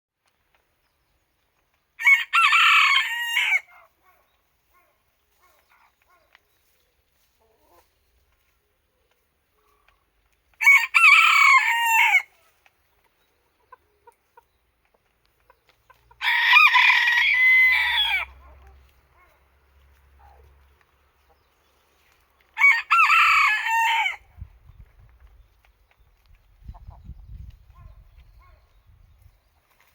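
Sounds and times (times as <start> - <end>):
rooster crowing: 16.2 - 18.3, 22.6 - 24.2.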